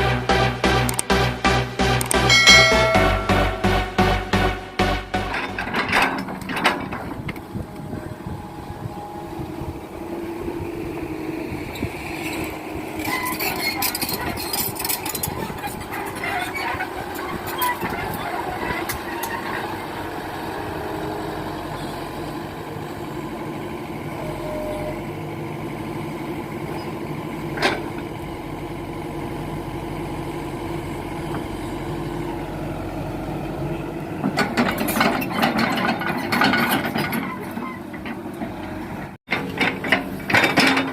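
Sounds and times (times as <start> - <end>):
heavy diesel machinery running: 0.0 - 40.9
metallic clanks and rattles: 4.8 - 7.6, 34.3 - 38.6, 39.3 - 40.9.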